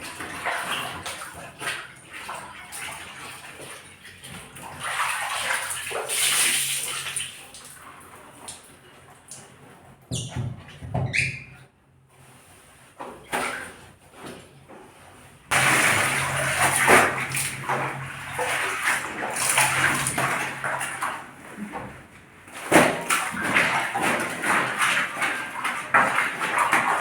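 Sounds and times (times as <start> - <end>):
running and splashing water: 0.0 - 9.5, 15.5 - 27.0.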